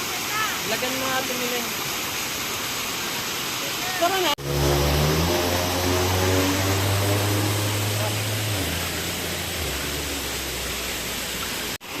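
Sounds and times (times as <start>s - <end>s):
road and wind noise: 4.4s - 11.8s
vehicle engine hum: 4.4s - 11.8s.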